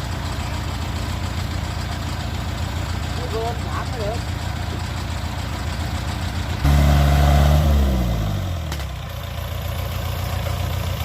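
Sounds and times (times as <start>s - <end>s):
farm machine engine idling: 0.0s - 11.0s
louder engine note: 6.6s - 8.8s.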